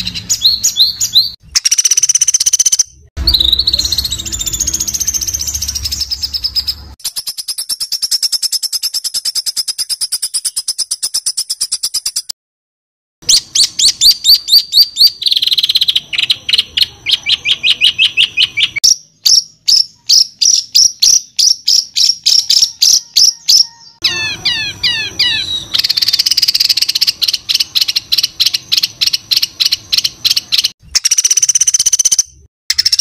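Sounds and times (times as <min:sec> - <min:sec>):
down-slurred bird whistles: 0:00.0 - 0:12.3
songbird trilling: 0:00.0 - 0:12.3.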